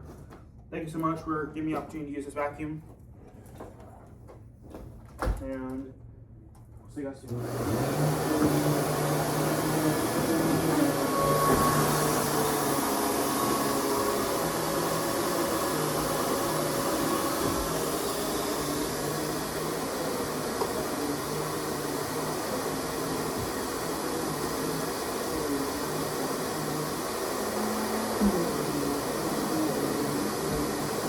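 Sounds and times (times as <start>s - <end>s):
vacuum cleaner running: 7.3s - 31.0s.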